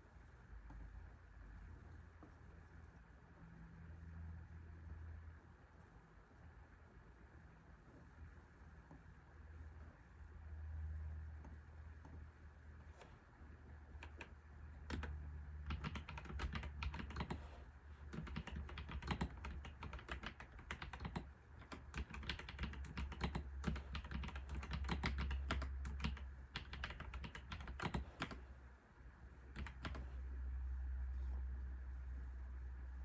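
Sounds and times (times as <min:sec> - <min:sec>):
steady low hum: 0:00.0 - 0:33.0
typing on computer keyboard: 0:13.9 - 0:28.4, 0:29.5 - 0:30.2.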